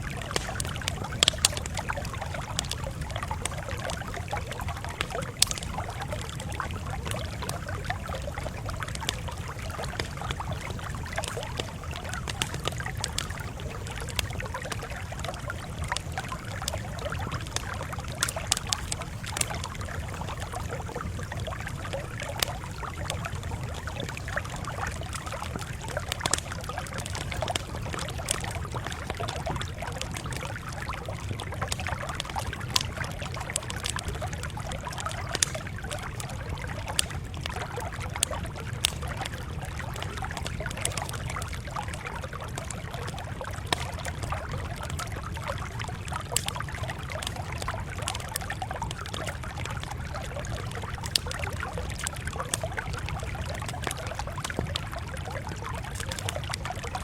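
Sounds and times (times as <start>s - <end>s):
campfire crackling: 0.0s - 57.0s.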